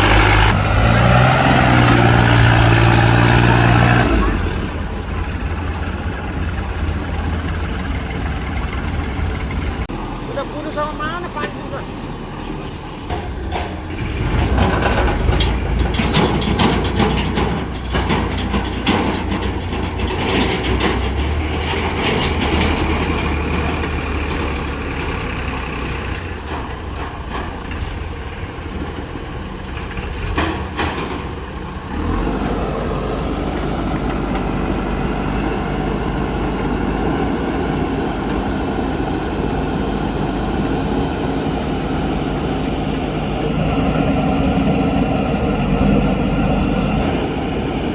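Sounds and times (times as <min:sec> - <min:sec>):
rattling and clanking: 0:00.0 - 0:11.8, 0:12.5 - 0:43.2
heavy diesel engines running: 0:00.0 - 0:47.9.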